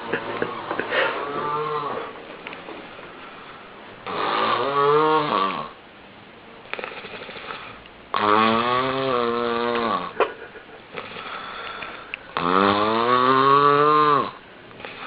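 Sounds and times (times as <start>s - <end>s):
person snoring: 0.5s - 2.2s, 4.0s - 5.8s, 6.8s - 10.2s, 10.9s - 15.0s.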